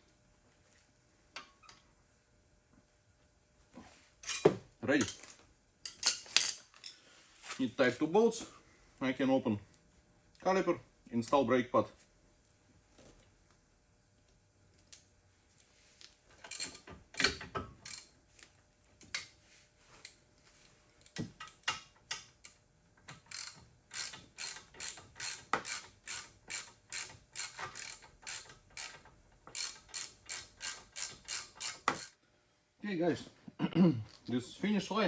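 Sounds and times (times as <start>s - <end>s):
ratchet wrench clicking: 23.2s - 32.1s.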